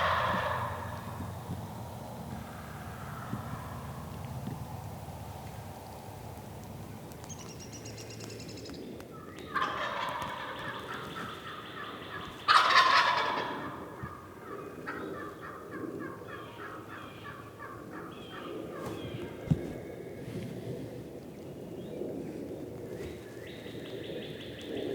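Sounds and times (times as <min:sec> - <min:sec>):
turkey gobbling and yelping: 0:00.0 - 0:01.2, 0:09.5 - 0:19.2.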